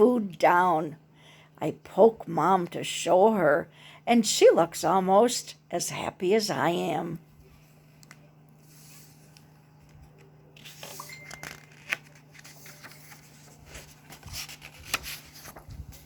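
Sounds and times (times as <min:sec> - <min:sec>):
paper pages rustling: 0:07.6 - 0:16.0.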